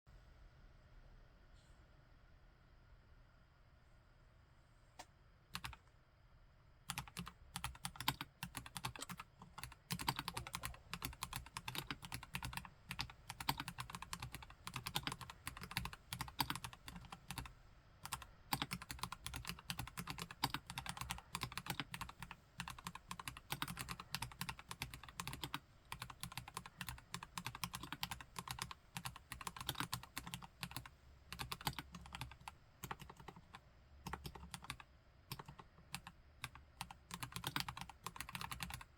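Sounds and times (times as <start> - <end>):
mechanical keyboard typing: 5.6 - 5.8, 6.9 - 38.9.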